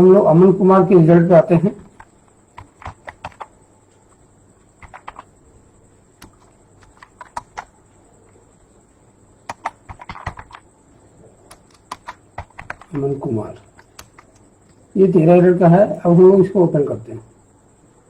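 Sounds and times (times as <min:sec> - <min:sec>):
faint high-pitched whine: 0:00.0 - 0:18.0
keyboard keys clicking: 0:01.7 - 0:03.5, 0:04.8 - 0:05.3, 0:06.2 - 0:08.4, 0:09.5 - 0:10.6, 0:11.5 - 0:14.4.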